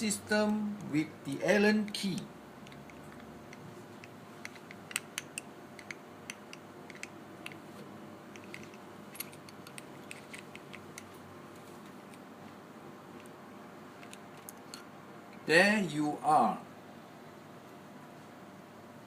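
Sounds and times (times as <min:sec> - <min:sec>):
allen key clicking on metal: 0:02.6 - 0:07.6.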